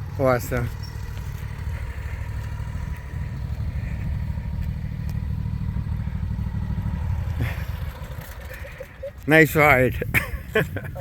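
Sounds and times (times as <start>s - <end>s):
lawnmower engine running: 0.0s - 11.0s.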